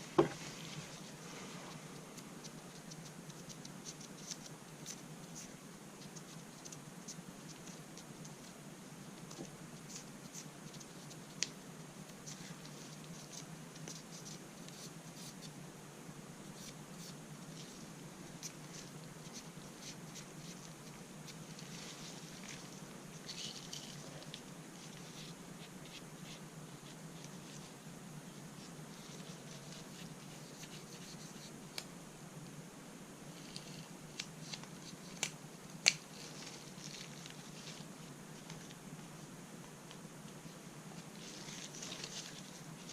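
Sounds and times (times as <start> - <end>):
scratching and wiping: 16.5 - 31.8, 40.4 - 42.9.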